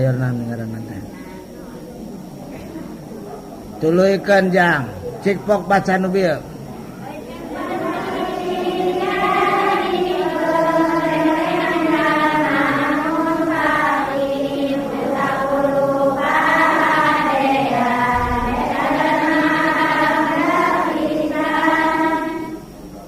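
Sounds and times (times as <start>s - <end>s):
group chanting in unison: 6.6s - 23.0s.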